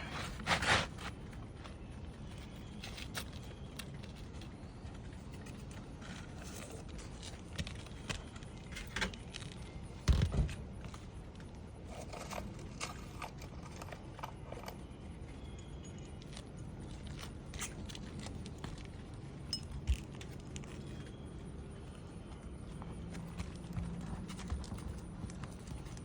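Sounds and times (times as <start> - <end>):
shingle scraping and tapping: 0.0 - 15.2.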